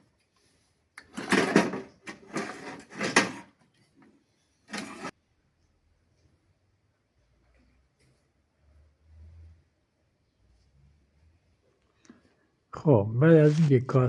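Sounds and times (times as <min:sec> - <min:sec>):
metal parts clattering and scraping: 0:01.1 - 0:03.5, 0:04.7 - 0:05.1.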